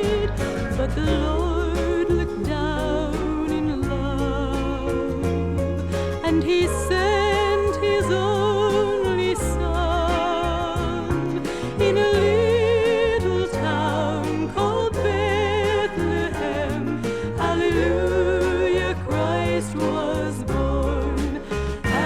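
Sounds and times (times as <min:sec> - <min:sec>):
band with steady bass line: 0:00.0 - 0:22.0
gospel singing with vibrato: 0:00.0 - 0:22.0.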